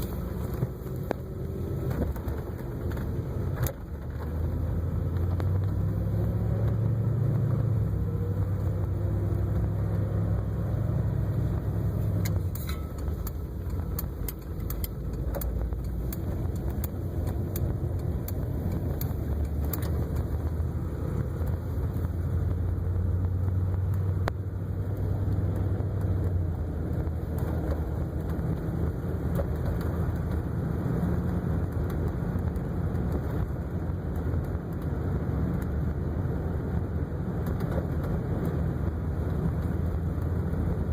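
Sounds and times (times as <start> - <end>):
car engine running: 0.0 - 40.9
sharp clicks: 12.1 - 20.6.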